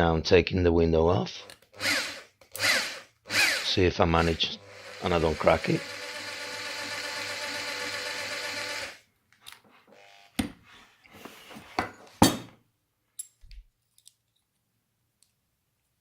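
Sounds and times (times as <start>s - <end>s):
electric power tool motor: 1.8s - 9.0s, 9.9s - 10.4s.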